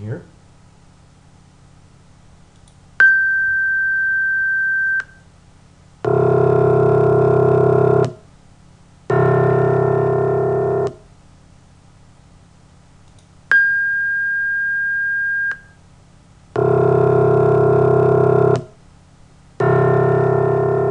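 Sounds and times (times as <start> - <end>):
steady pure tone: 3.0 - 20.9
low organ-like chords: 6.0 - 8.2, 9.1 - 11.0, 16.6 - 18.7, 19.6 - 20.9
tone switching click: 18.5 - 18.7.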